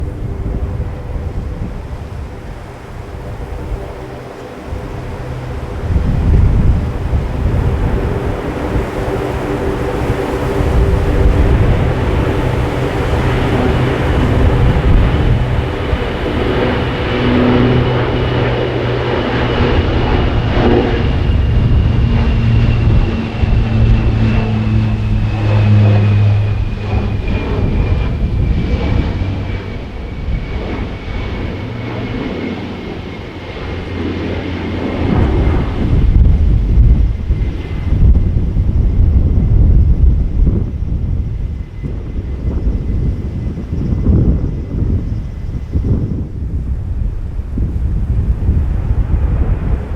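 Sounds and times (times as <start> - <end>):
high whine falling in pitch: 0.0 - 41.5
aircraft engines running: 0.0 - 49.9.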